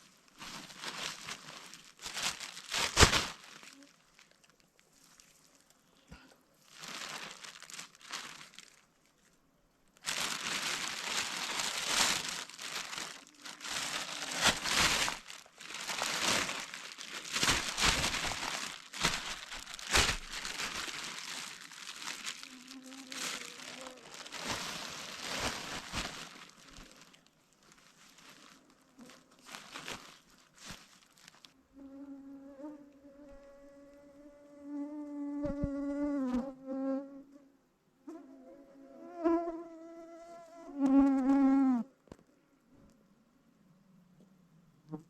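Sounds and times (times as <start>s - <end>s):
rustling and crinkling: 0.0s - 31.6s, 35.4s - 36.6s.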